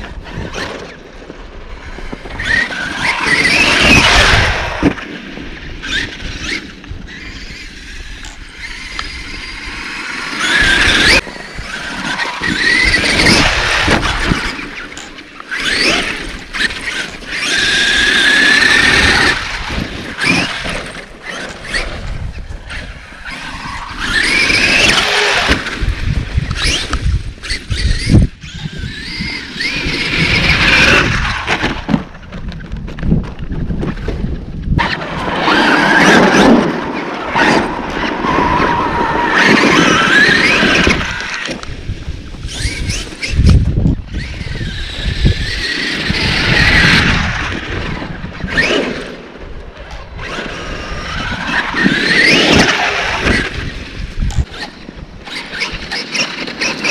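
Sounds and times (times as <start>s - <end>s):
electric motor whining: 1.7s - 5.1s, 5.7s - 31.9s, 34.8s - 56.9s.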